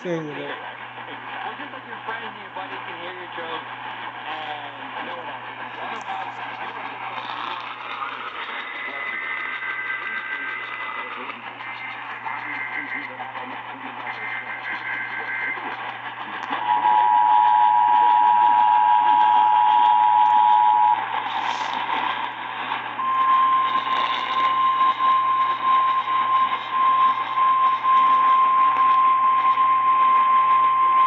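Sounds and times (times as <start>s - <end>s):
radio static: 0.0s - 31.0s
single warning tone: 16.6s - 21.0s.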